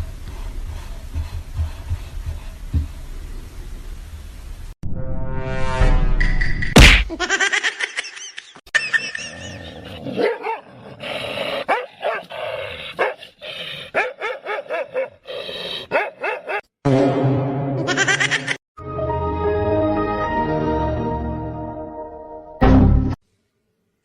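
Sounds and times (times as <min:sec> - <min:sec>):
dog barking: 0:10.2 - 0:10.7, 0:11.6 - 0:12.3, 0:13.0 - 0:13.2, 0:13.9 - 0:15.2, 0:15.9 - 0:16.7.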